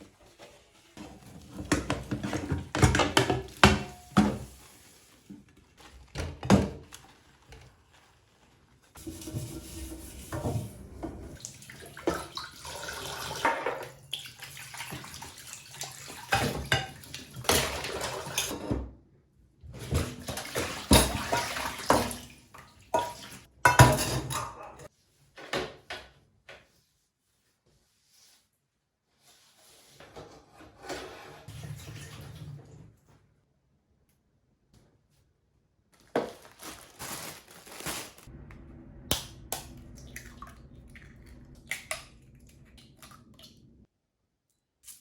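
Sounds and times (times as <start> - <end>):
water running: 8.9 - 18.5, 19.9 - 24.9, 37.6 - 43.9
dishes and cutlery clinking: 23.0 - 24.9.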